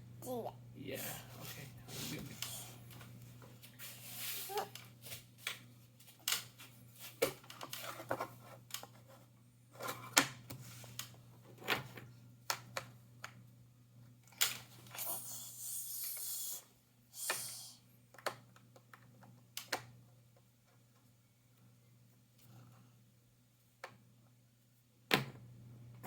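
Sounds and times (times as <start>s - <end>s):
rustling scrapes: 3.5s - 5.4s.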